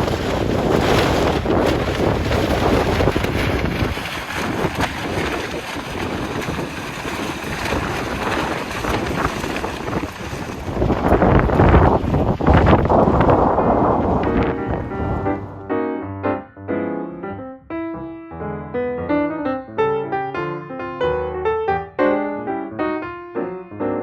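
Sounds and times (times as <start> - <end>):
wind buffeting microphone: 0.0 - 15.7.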